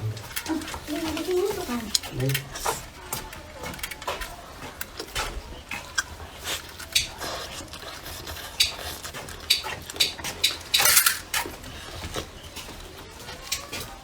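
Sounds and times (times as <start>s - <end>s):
dishes and utensils clinking: 0.0s - 14.0s.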